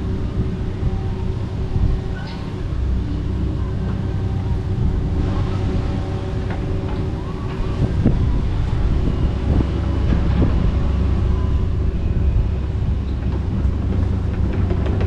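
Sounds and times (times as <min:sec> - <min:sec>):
excavator diesel engine running: 0:00.0 - 0:15.0.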